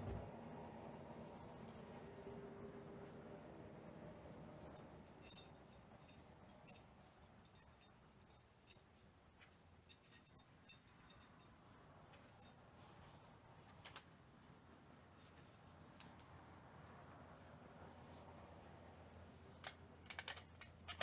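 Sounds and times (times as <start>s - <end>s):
metallic clinking and jingling: 4.6s - 11.6s, 15.1s - 15.9s.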